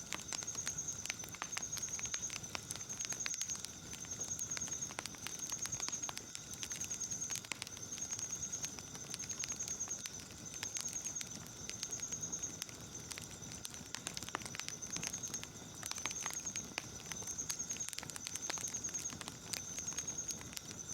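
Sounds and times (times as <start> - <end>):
night insects chirping: 0.0 - 20.9
wood fire crackling and popping: 0.0 - 20.9.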